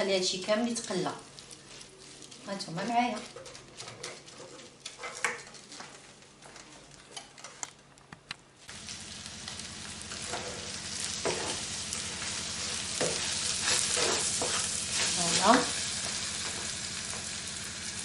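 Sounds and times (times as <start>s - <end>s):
vegetables sizzling in a pan: 0.0s - 3.2s, 8.7s - 18.0s
spoon scraping a pan: 10.2s - 17.3s.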